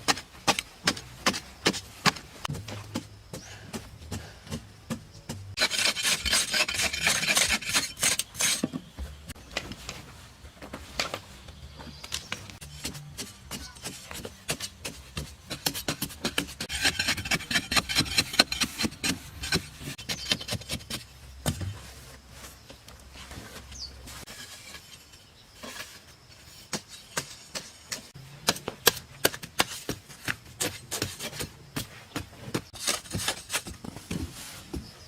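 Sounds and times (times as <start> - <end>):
hand tool rasping on rough surface: 5.5 - 8.8, 12.6 - 21.1.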